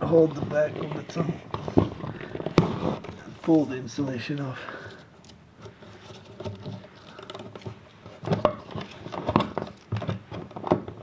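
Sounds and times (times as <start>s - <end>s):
electrical cable rustling: 0.0s - 11.0s.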